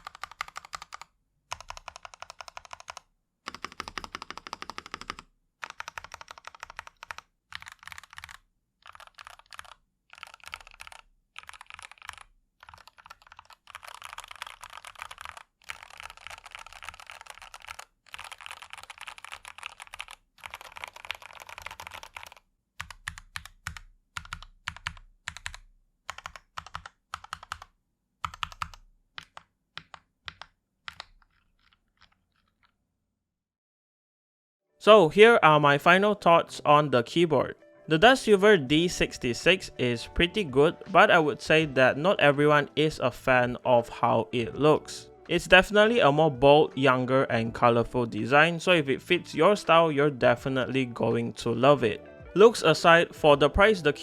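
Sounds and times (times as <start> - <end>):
typing on a mechanical keyboard: 0.0 - 32.8.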